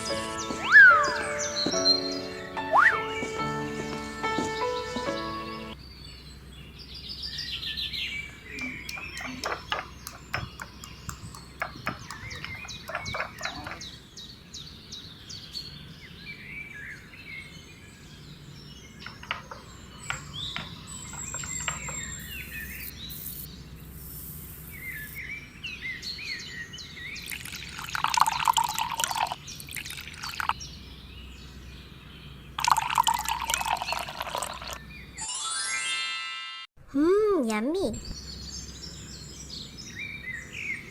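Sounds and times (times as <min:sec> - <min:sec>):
parrot chirping and calling: 0:08.3 - 0:14.1.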